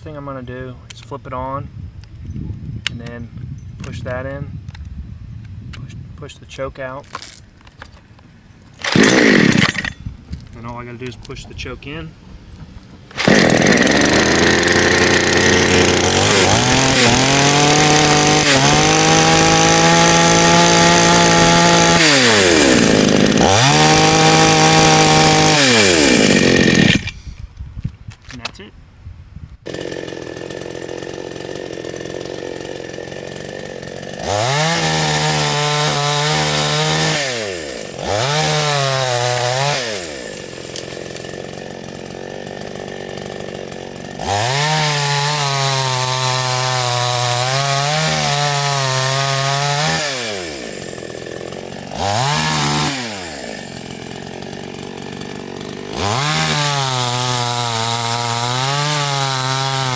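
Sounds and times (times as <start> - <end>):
chainsaw engine idling and revving: 8.8 - 10.0, 13.1 - 27.2, 29.6 - 59.9.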